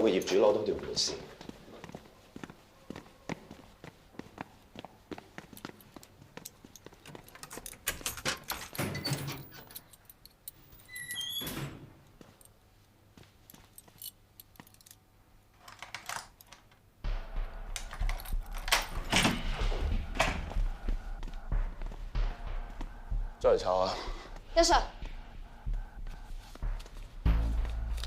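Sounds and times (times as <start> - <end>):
keys jingling: 5.5 - 11.2, 13.4 - 16.8
low steady hum: 17.0 - 28.0.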